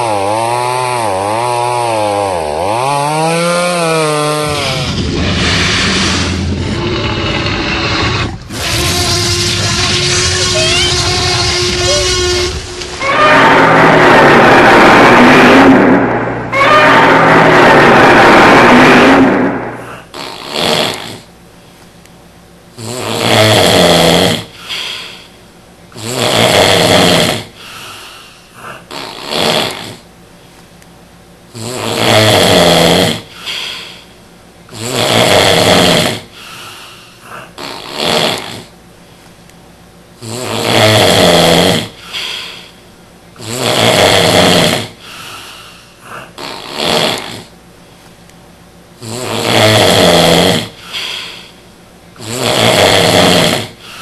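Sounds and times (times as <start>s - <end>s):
loud snoring: 0.0s - 9.6s, 18.7s - 21.3s, 22.8s - 24.5s, 26.0s - 27.5s, 28.8s - 30.0s, 31.5s - 33.3s, 34.7s - 36.3s, 37.6s - 38.7s, 40.2s - 42.0s, 43.4s - 45.0s, 46.3s - 47.5s, 49.0s - 50.8s, 52.2s - 53.8s
quiet breath sounds: 24.5s - 25.5s, 27.5s - 29.0s, 33.2s - 34.3s, 36.3s - 37.6s, 41.9s - 43.0s, 44.9s - 46.4s, 50.7s - 51.8s, 53.7s - 54.0s.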